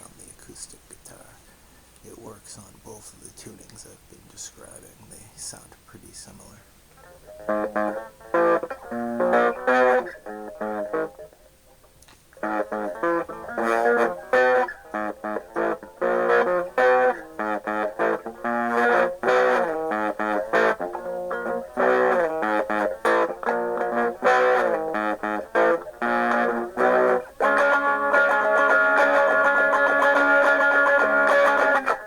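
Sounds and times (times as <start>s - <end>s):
guitar riff: 6.4s - 32.0s.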